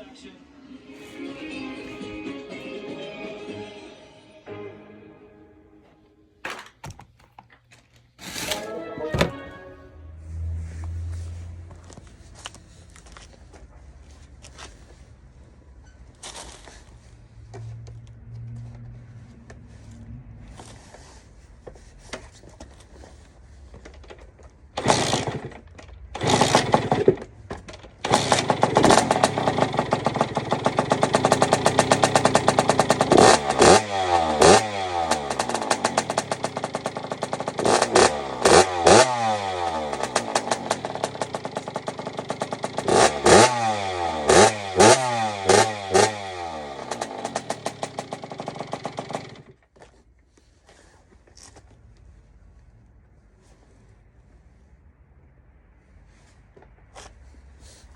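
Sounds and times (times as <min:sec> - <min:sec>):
motorcycle kick-start: 0:23.9 - 0:49.7
two-stroke engine revving: 0:24.8 - 0:27.4, 0:28.0 - 0:49.6.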